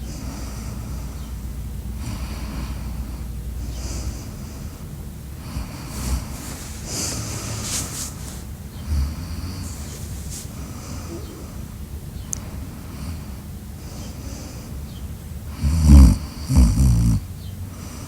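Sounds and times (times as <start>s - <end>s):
snorting breaths: 0.0s - 18.0s
person snoring: 5.4s - 11.6s, 15.6s - 17.2s.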